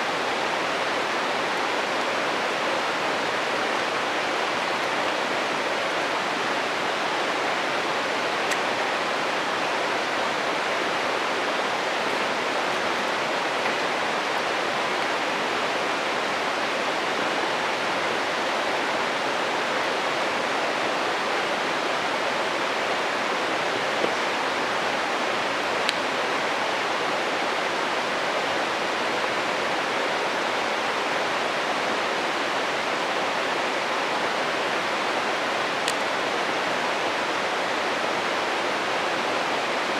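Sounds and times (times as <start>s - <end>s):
stream rushing: 0.0s - 39.9s
burning wood crackling: 11.5s - 16.5s.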